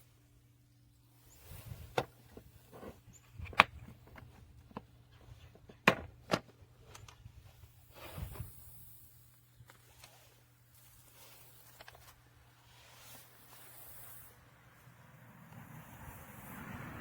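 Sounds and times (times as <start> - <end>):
sharp clicks and knocks: 2.0 - 7.2.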